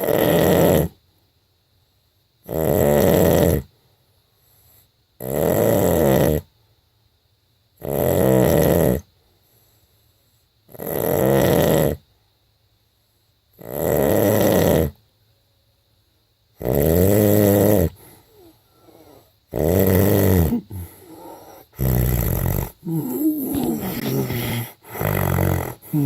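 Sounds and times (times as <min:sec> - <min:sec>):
person snoring: 0:00.0 - 0:01.0, 0:02.5 - 0:03.7, 0:05.2 - 0:06.5, 0:07.8 - 0:09.1, 0:10.7 - 0:12.0, 0:13.6 - 0:15.0, 0:16.6 - 0:26.0.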